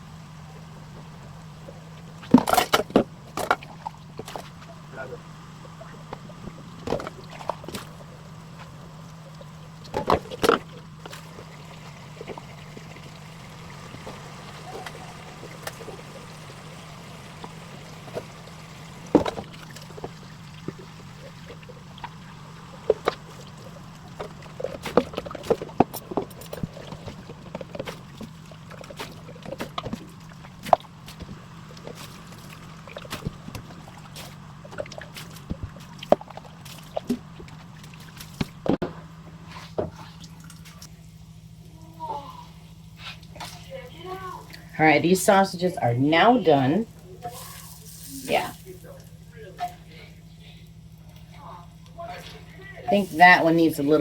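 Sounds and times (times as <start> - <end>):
steady low hum: 0.0 - 54.0
sausages frying in a pan: 10.6 - 24.4, 45.0 - 49.2, 52.9 - 54.0.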